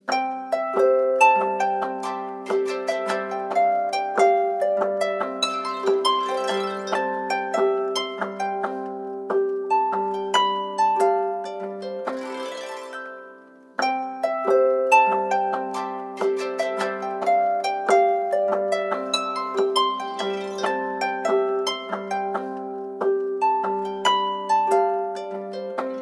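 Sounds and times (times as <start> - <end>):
plucked harp-like ringtone melody: 0.0 - 26.0.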